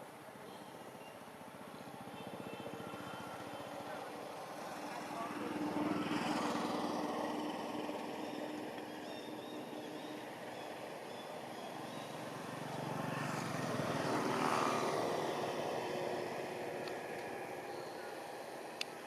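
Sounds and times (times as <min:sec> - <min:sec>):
vehicle engine passing by: 0:02.0 - 0:09.4, 0:11.7 - 0:18.4.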